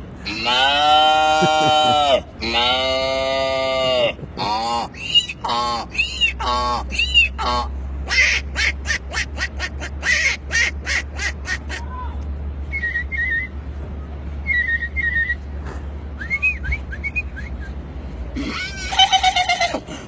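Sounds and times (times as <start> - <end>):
short swooping whistles: 12.7 - 13.6, 14.4 - 15.5, 16.2 - 17.8.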